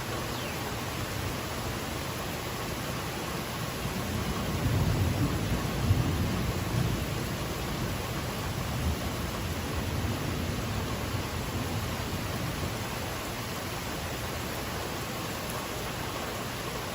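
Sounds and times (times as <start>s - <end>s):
steady rain hiss: 0.0s - 16.9s
low thunder rumble: 3.9s - 12.9s.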